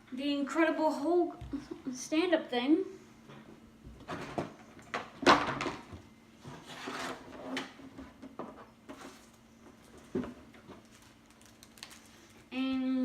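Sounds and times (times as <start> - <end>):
items knocking and clicking: 3.9 - 6.0, 7.2 - 10.8
packaging rustling: 8.9 - 12.5.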